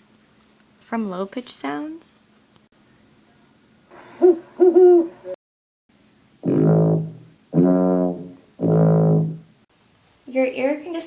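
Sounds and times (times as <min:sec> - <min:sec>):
long low brass notes: 0:06.4 - 0:09.4.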